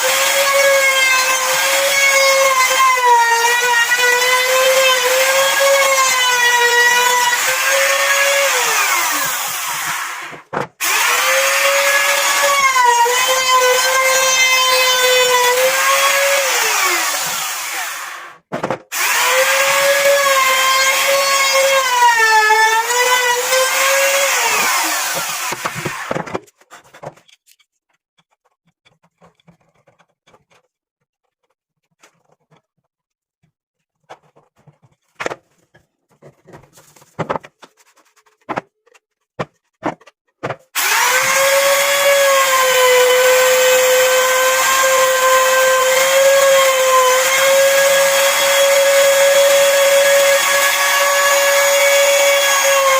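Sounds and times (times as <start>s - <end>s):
power tool motor whining: 40.8s - 52.9s.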